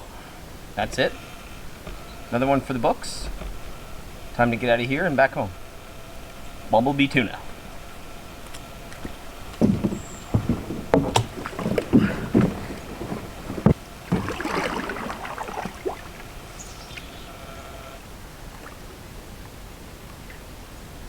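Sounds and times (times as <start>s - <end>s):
paddle stroke water rush: 0.0s - 21.0s
knocks against canoe hull: 0.7s - 17.0s.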